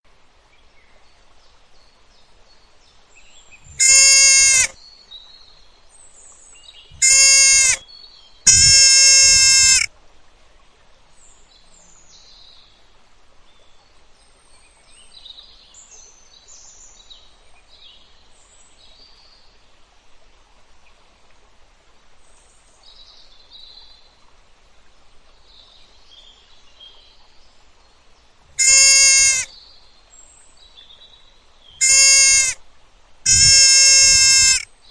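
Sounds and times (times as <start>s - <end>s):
loud steady bleats: 3.7s - 4.8s, 7.0s - 7.8s, 8.5s - 9.9s, 28.6s - 29.5s, 31.8s - 32.6s, 33.3s - 34.6s.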